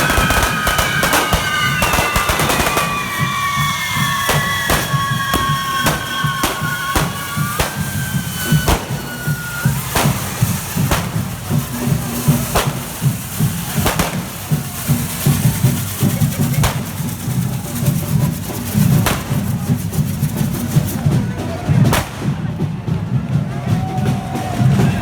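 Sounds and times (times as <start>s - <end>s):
sharp bangs: 0.0s - 15.6s, 16.6s - 17.5s, 18.9s - 19.9s, 21.9s - 22.8s
bass drums beating a rhythm: 0.0s - 25.0s.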